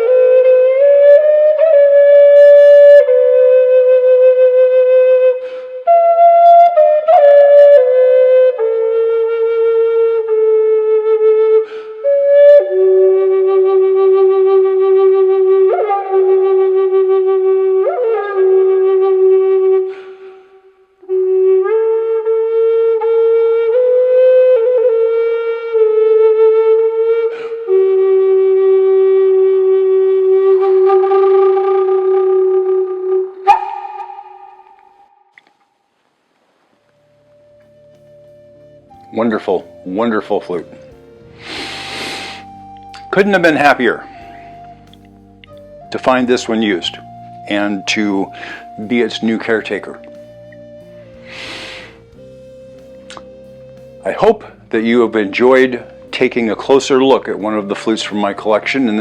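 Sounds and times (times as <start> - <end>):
flute playing slow melody: 0.0 - 35.5, 36.8 - 59.0
puff of breath: 5.4 - 5.8, 11.6 - 12.0, 19.9 - 20.6, 27.3 - 27.7, 41.4 - 42.6, 44.1 - 44.7, 48.3 - 48.8, 51.2 - 52.0.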